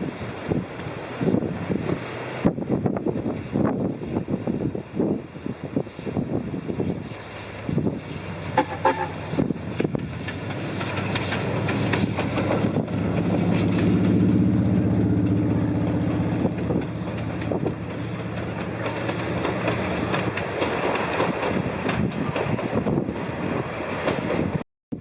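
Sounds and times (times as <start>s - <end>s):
train wheels clattering on rails: 6.7s - 24.6s.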